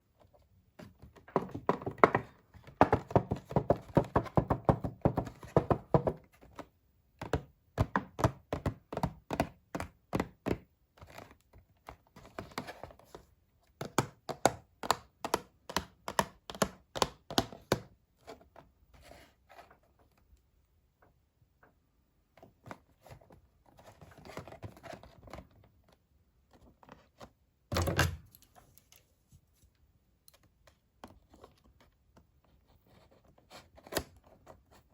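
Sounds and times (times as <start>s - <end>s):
taps and clicks on packaging: 13.8s - 17.9s.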